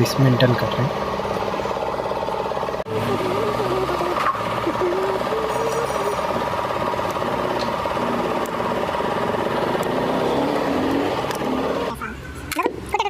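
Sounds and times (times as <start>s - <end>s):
machine running with rapid pulsing: 0.4s - 11.9s.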